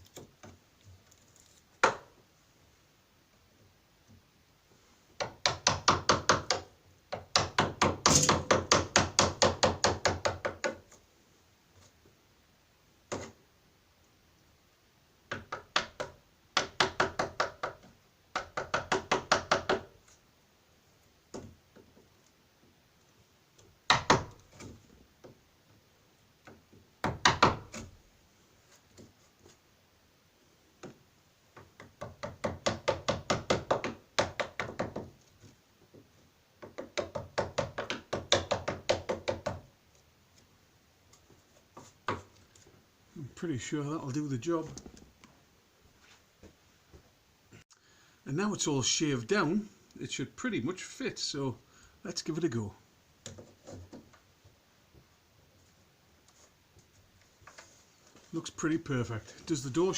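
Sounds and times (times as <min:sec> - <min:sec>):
hammer tapping chisel into wood: 0:05.2 - 0:10.8, 0:15.3 - 0:19.9, 0:31.6 - 0:35.1, 0:36.6 - 0:39.6.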